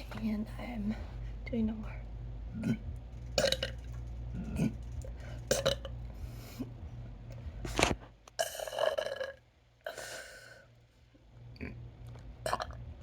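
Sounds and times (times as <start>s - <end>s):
person burping: 2.5s - 3.8s, 4.4s - 4.8s, 5.5s - 5.9s, 11.6s - 11.8s, 12.4s - 12.8s.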